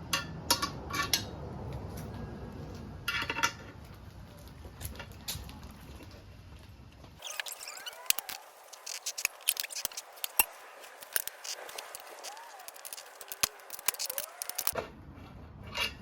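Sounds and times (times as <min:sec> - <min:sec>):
faint squeaks: 0:07.2 - 0:14.8
screwdrivers clicking and scraping on rim: 0:07.2 - 0:14.8.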